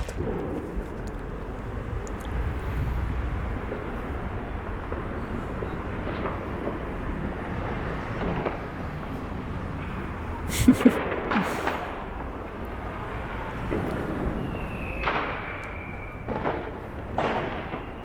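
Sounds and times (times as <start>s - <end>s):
low rumble: 0.0s - 5.0s
distant firecracker pops: 0.0s - 10.2s, 10.9s - 18.0s
city street noise: 0.0s - 18.0s.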